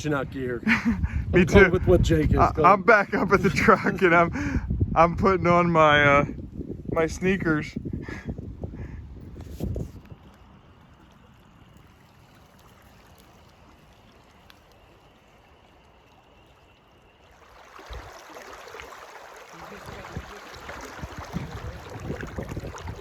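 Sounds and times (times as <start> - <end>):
creek water flowing: 7.2 - 23.0.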